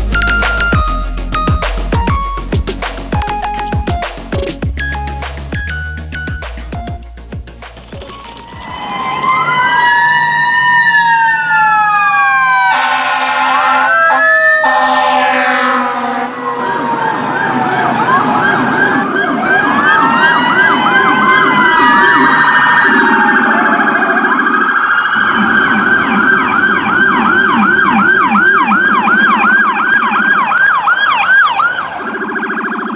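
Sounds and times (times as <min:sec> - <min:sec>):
electronic emergency siren: 0:00.0 - 0:07.2, 0:07.8 - 0:32.9.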